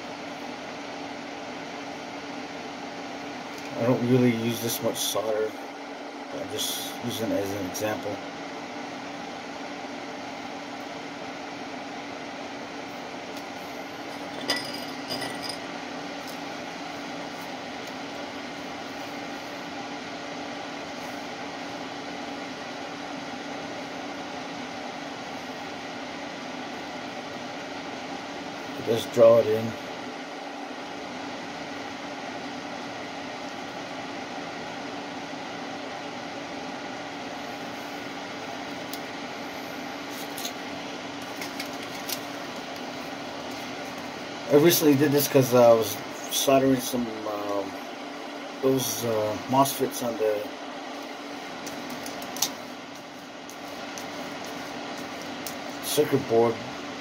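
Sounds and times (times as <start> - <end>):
cooling fan humming: 0.0 - 57.0
metal clinks: 14.3 - 15.6.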